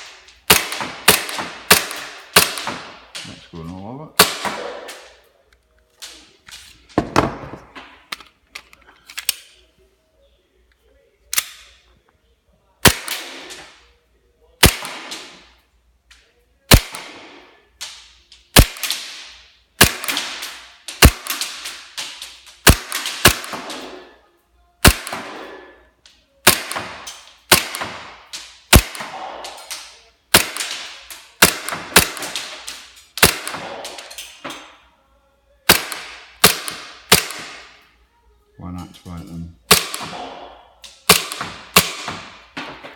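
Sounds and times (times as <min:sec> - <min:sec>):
airsoft pistol shots: 0:26.5 - 0:28.1, 0:28.7 - 0:29.7, 0:39.7 - 0:42.8.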